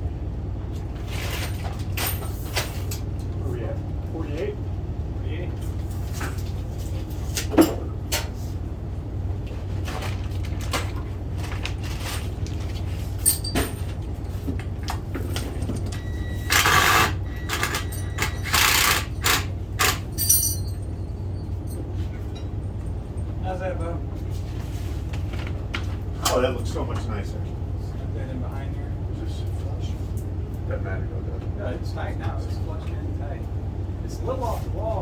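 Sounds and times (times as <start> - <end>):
steady low hum: 11.1 - 35.0.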